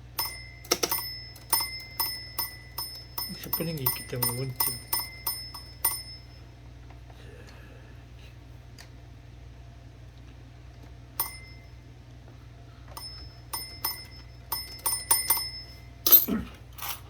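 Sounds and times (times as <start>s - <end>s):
typewriter bell dinging: 0.2s - 6.4s, 11.2s - 11.7s, 13.0s - 16.3s.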